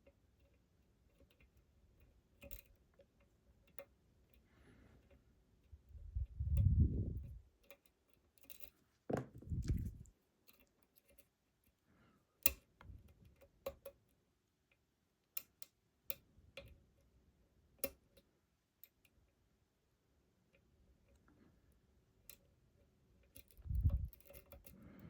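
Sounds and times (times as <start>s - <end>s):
dull handling bumps: 9.1s - 10.1s.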